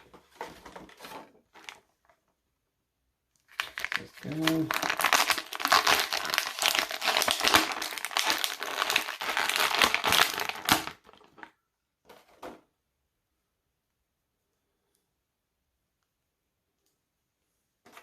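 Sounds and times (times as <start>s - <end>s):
packaging rustles: 0.1s - 2.2s, 3.5s - 11.5s
plastic packaging crinkling: 3.4s - 11.5s.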